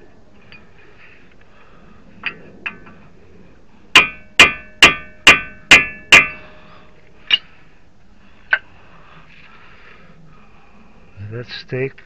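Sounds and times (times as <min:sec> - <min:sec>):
hammer striking chisel: 0:04.0 - 0:06.4.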